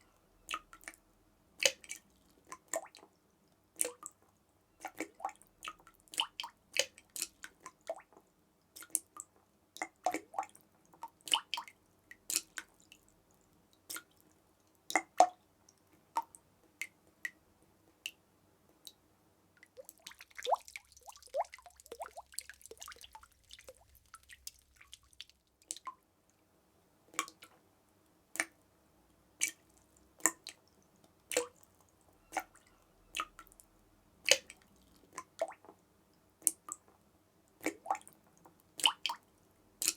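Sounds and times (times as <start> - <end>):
water drops dripping: 19.6 - 26.0, 27.2 - 27.6, 28.4 - 28.6, 29.4 - 35.8.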